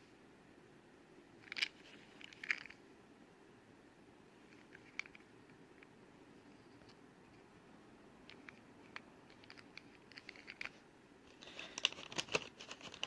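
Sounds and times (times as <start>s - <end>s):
toy cars and packaging clicking: 8.3s - 13.0s.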